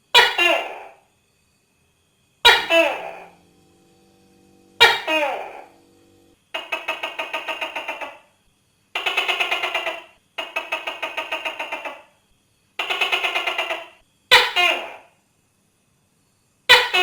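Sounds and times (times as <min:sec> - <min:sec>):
gecko pulsing rattle call: 0:02.4 - 0:12.2, 0:12.8 - 0:15.2
gecko sharp call note: 0:02.5 - 0:06.1.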